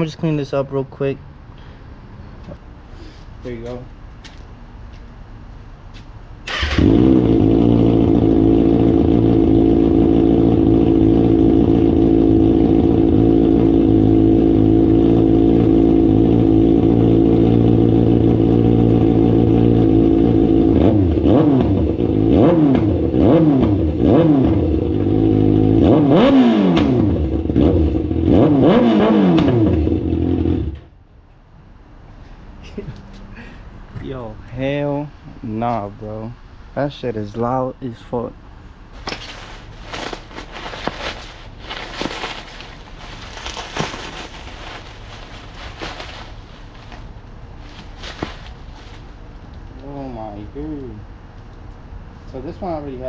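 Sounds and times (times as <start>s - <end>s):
motorcycle engine revving: 6.5s - 30.9s.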